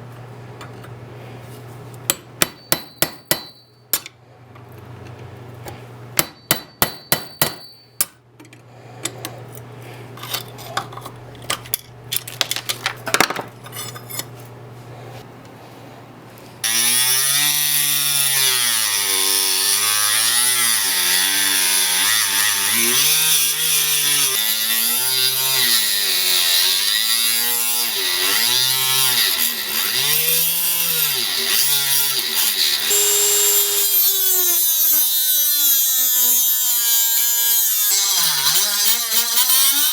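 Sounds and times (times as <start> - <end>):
power grinder on steel: 16.6 - 39.9.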